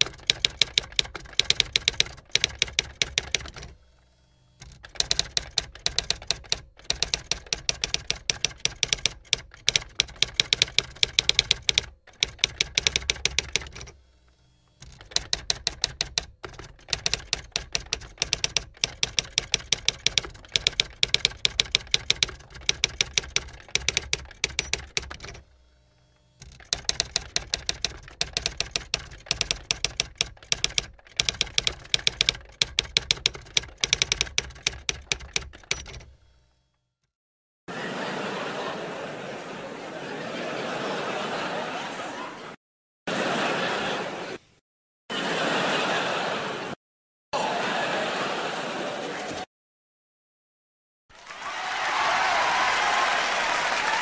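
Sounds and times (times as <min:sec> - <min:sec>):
typewriter keys clicking: 0:00.0 - 0:03.8, 0:04.6 - 0:14.0, 0:14.8 - 0:25.5, 0:26.4 - 0:36.3.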